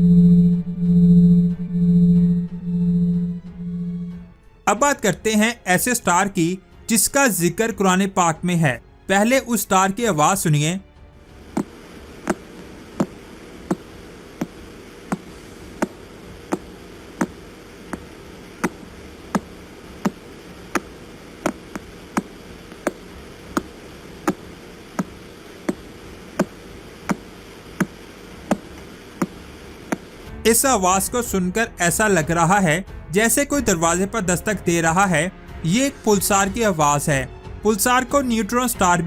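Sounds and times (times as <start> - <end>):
steady hiss: 11.3 - 30.3
sharp pulsar clicks: 11.5 - 30.3.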